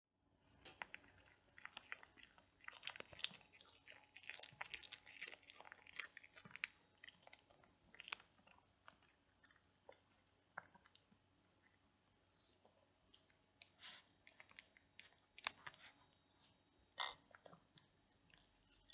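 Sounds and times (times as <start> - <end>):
cat crunching food: 0.7 - 11.8, 13.1 - 16.2.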